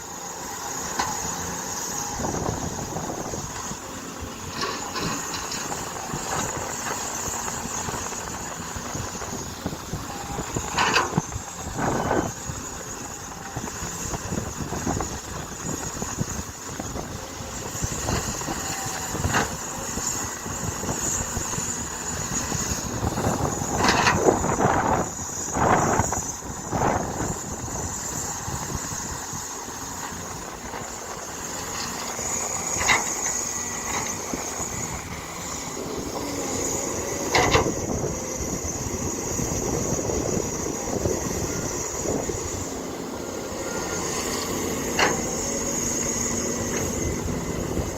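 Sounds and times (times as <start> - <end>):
excavator engine running: 0.0 - 47.9
high squeal: 4.8 - 30.0, 30.8 - 47.9.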